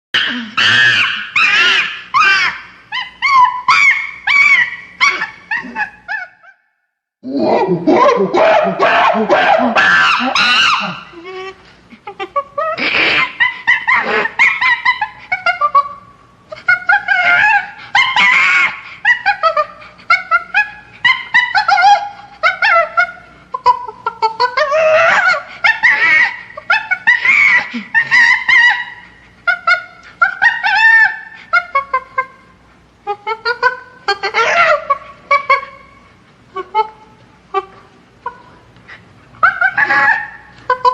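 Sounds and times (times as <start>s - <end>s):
chimpanzee screaming: 0.2s - 6.6s, 7.3s - 11.6s, 12.2s - 16.0s, 16.6s - 32.4s, 33.2s - 36.0s, 39.4s - 40.9s.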